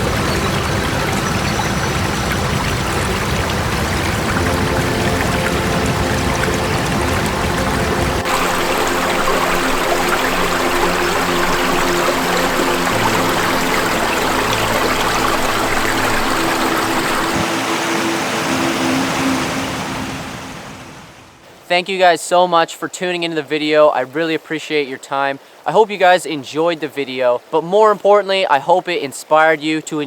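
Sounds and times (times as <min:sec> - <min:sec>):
creek water running over rocks: 0:00.0 - 0:20.4, 0:21.4 - 0:30.0
faint music tones: 0:00.0 - 0:21.1.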